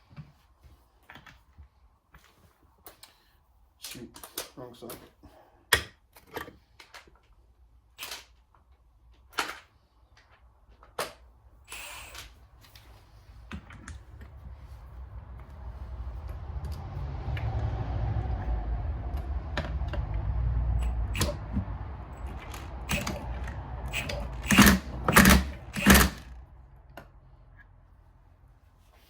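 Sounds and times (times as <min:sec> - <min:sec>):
low rumble: 0:14.0 - 0:27.0
metal parts clicking: 0:22.2 - 0:26.4.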